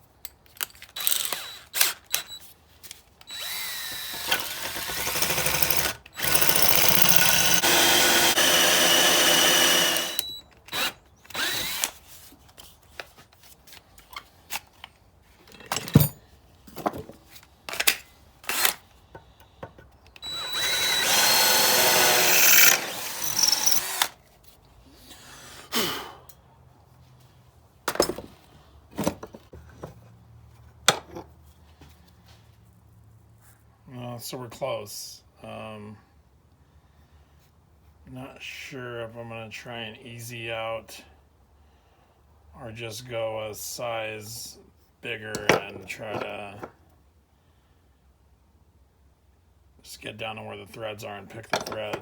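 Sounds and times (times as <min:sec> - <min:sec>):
electric drill boring into metal: 0:01.0 - 0:02.4, 0:03.3 - 0:11.9, 0:20.2 - 0:24.2.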